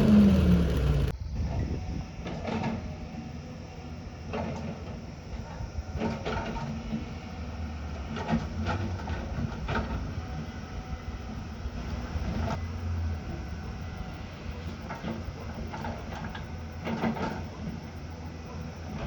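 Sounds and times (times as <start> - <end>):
diesel engine running: 0.0 - 1.2.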